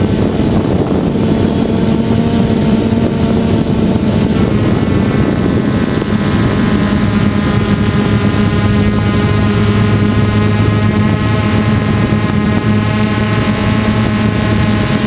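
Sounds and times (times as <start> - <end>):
drone propellers buzzing: 0.0 - 15.0.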